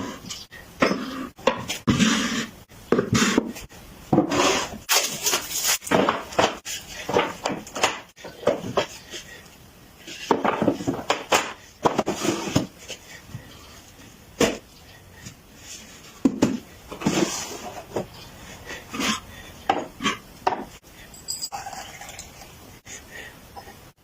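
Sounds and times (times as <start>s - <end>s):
wood scraping against wood: 1.7s - 9.0s.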